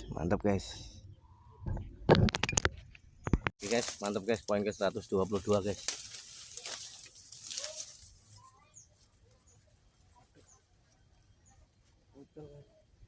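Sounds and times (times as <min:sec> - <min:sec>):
rustling handling noise: 0:03.6 - 0:09.5.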